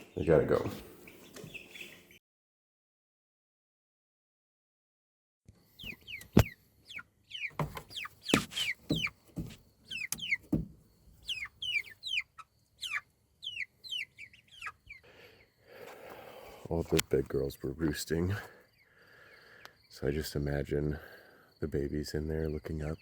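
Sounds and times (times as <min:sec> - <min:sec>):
chicks peeping: 0:00.0 - 0:02.2, 0:05.6 - 0:20.4.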